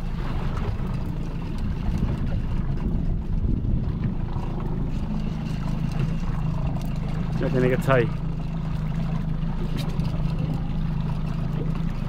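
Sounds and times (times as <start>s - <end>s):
boat engine humming: 0.0s - 12.0s.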